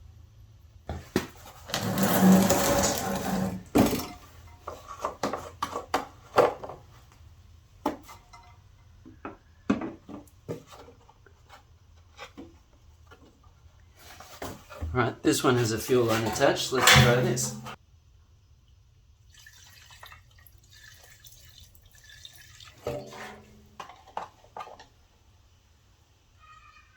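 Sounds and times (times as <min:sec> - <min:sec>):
lawnmower rattling and whirring: 0:01.7 - 0:04.1, 0:16.2 - 0:17.8.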